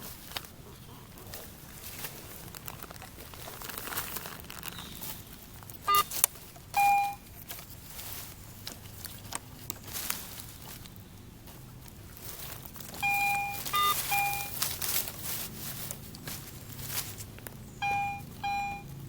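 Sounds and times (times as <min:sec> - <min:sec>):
dirt scraping and crunching: 0:00.0 - 0:19.0
metal detector beeps: 0:05.8 - 0:07.5, 0:13.0 - 0:14.6, 0:17.8 - 0:18.9.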